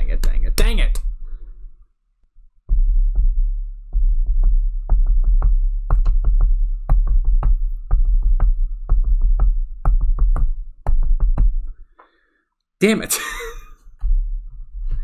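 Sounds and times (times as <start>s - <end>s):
deep steady bass: 2.5s - 11.8s
electronic music with drum hits: 2.6s - 11.8s.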